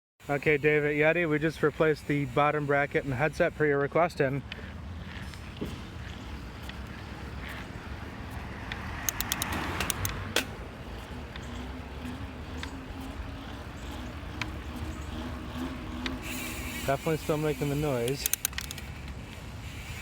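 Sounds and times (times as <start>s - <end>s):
bike snapping clicks: 8.6s - 19.5s.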